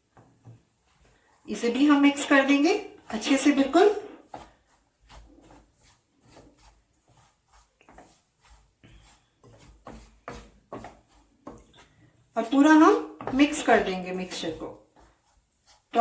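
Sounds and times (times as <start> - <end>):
spoon stirring and scraping pan: 0.0 - 16.0.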